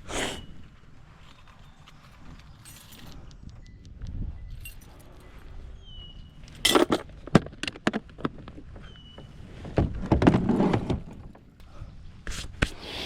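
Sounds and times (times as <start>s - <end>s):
kayak scraping clatter: 6.7s - 11.5s.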